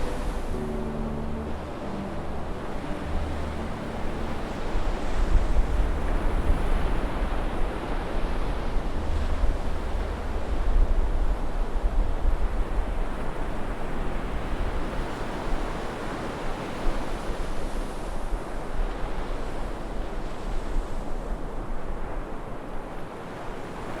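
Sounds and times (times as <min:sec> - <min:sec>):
wind rumbling on microphone: 0:00.0 - 0:23.0.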